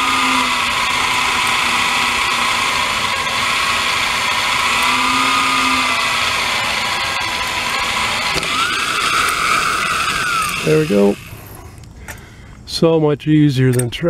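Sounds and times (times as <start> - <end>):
electric drill whirring: 0.0 - 11.8.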